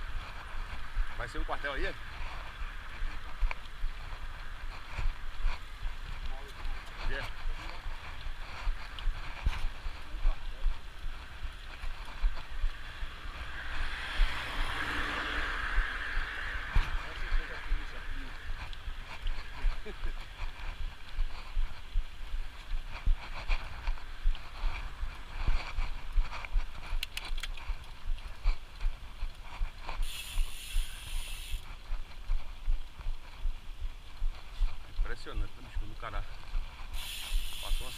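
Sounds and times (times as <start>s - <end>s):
constant low rumble: 0.0s - 37.9s
wind buffeting microphone: 0.0s - 37.9s
bike gear clicks: 24.3s - 32.2s, 36.9s - 37.9s
freewheel ratchet buzzing: 30.0s - 31.6s, 37.0s - 37.9s.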